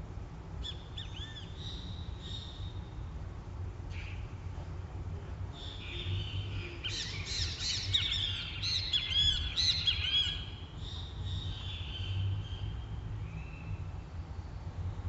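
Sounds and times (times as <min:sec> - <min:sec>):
birds calling: 0:05.6 - 0:13.8.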